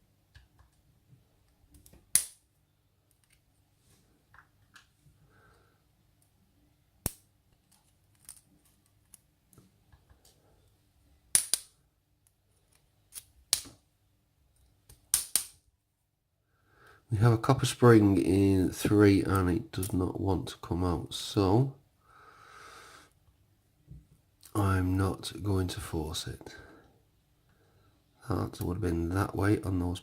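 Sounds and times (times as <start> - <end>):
small metal lock parts clicking: 7.0 - 9.3.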